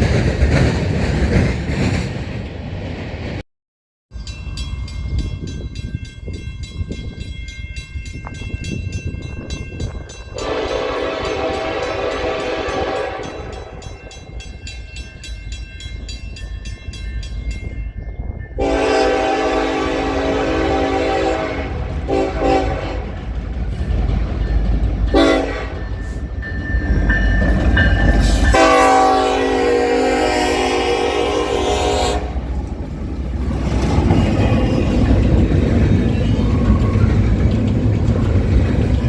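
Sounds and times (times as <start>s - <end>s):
passing train rumble: 0.0s - 3.4s, 4.1s - 39.0s
locomotive air horn blasts: 10.4s - 13.6s, 18.6s - 23.2s, 25.1s - 25.8s, 28.3s - 32.5s.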